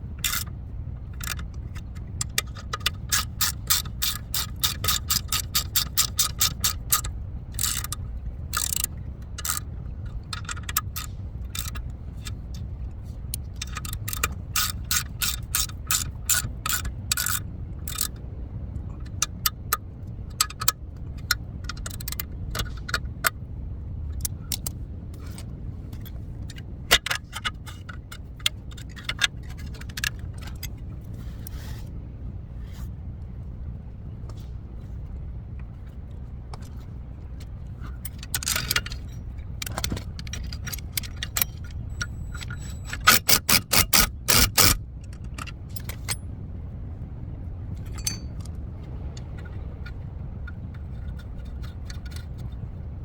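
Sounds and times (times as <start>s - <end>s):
low steady hum: 0.0s - 53.0s
ratchet wrench clicking: 0.2s - 0.5s, 1.2s - 12.6s, 13.3s - 18.2s, 37.8s - 46.2s, 47.9s - 48.6s.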